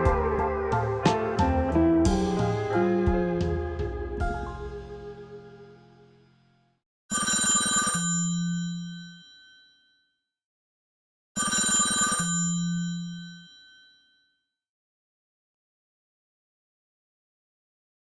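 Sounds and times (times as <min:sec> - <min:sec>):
ringing alert chime: 0:07.2 - 0:10.0, 0:11.4 - 0:14.2.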